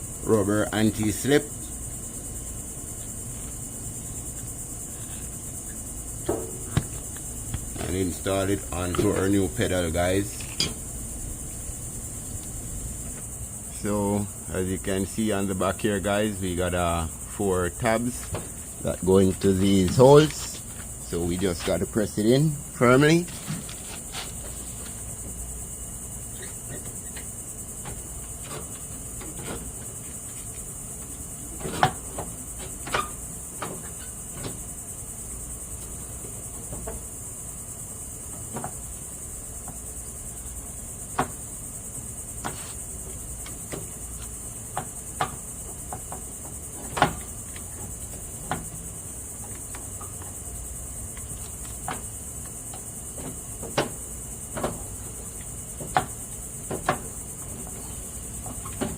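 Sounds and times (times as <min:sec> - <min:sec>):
high-pitched insect chorus: 0:00.0 - 0:58.9
hands pressing rubber pad on metal: 0:06.2 - 0:09.4.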